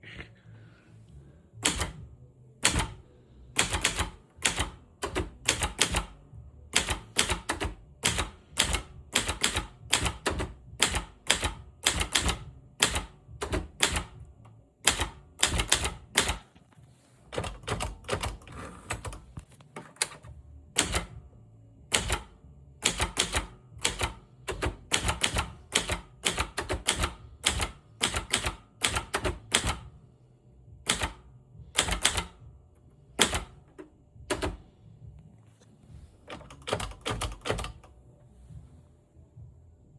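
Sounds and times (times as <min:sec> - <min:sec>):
typewriter keys clacking: 0:03.6 - 0:06.1, 0:06.8 - 0:14.2, 0:17.3 - 0:21.1, 0:22.0 - 0:29.8, 0:36.3 - 0:37.9.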